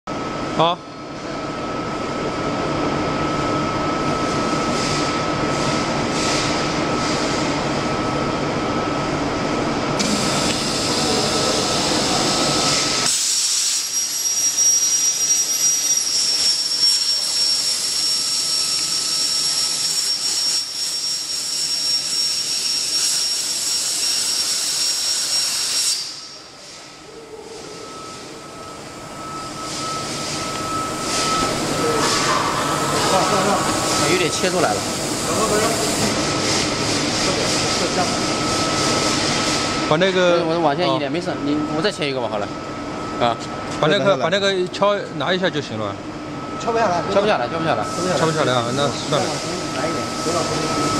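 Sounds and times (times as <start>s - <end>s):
machine noise: 0.1s - 50.9s
gas hiss: 10.0s - 14.6s, 16.3s - 27.0s
plasma torch cutting steel: 10.0s - 27.0s, 29.2s - 40.2s.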